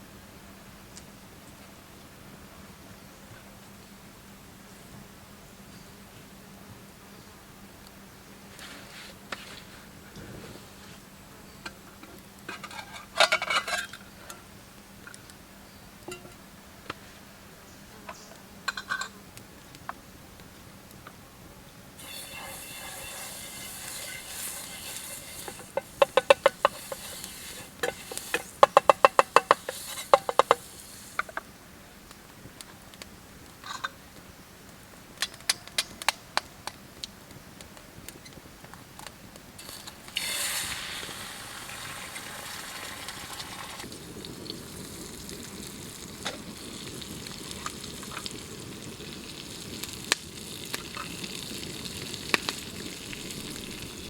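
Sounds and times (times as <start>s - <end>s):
utensil scraping pan: 22.0s - 31.3s
food sizzling in a pan: 22.0s - 31.4s, 39.6s - 54.0s
sudden loud hiss: 22.0s - 31.5s, 39.6s - 48.9s, 49.6s - 54.0s.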